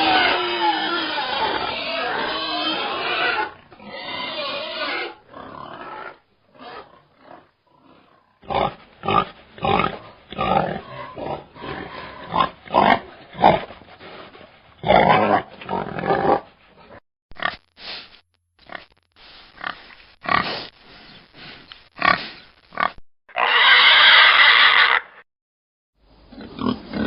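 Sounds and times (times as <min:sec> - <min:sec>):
pigs calling: 0:00.0 - 0:16.5, 0:21.4 - 0:25.2.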